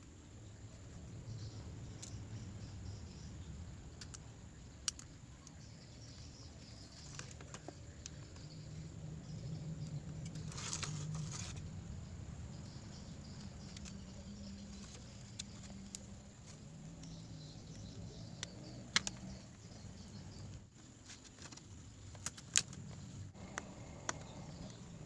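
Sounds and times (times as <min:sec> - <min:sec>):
low steady hum: 0:00.0 - 0:25.0
small tools clicking and tapping: 0:03.9 - 0:08.6
scraping rustle: 0:10.1 - 0:11.8.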